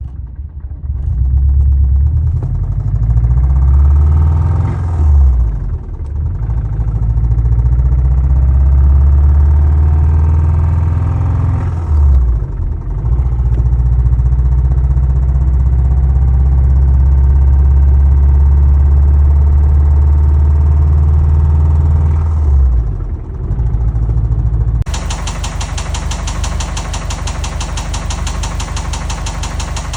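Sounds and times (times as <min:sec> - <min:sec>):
engine knocking chatter: 0:00.0 - 0:04.2, 0:22.8 - 0:29.9
car engine accelerating through gears: 0:00.9 - 0:29.9.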